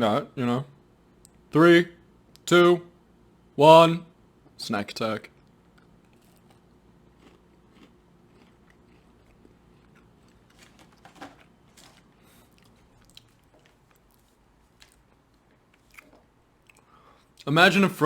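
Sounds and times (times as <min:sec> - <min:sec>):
crunching and chewing cracker: 0:05.3 - 0:17.5.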